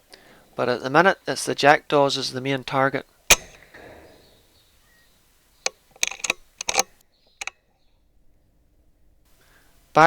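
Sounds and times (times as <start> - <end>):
scattered clicks and knocks: 3.3 - 3.9, 5.6 - 7.6
air rifle shot with echo: 3.3 - 4.4.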